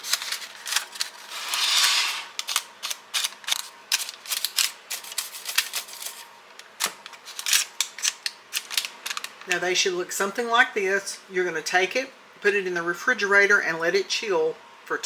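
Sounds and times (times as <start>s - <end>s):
spatula scraping a pan: 1.3s - 2.4s.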